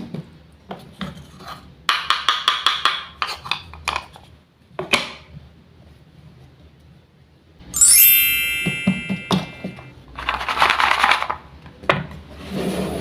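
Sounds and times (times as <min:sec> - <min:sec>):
wooden toy pieces clacking: 0:10.2 - 0:11.4.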